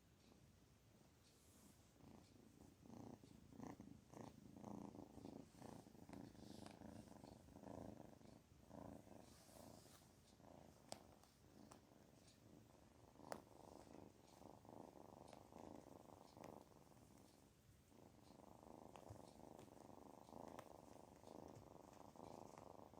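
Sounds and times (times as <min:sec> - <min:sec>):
kitten purring: 0:00.0 - 0:22.9.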